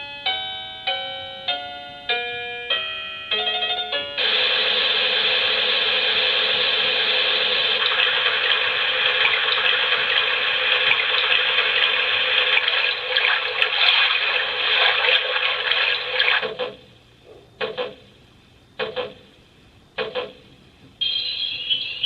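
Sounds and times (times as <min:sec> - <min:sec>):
running water sound from speaker: 0:04.4 - 0:16.6.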